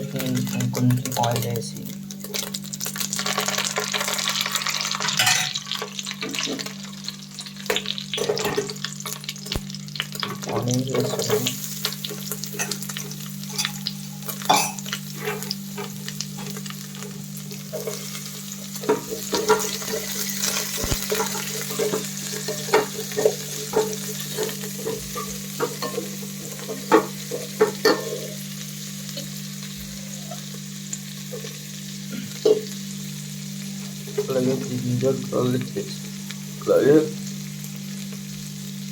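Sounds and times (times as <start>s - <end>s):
onions sizzling in oil: 0.0s - 38.9s
spatula clicking and scraping pan: 10.2s - 28.4s.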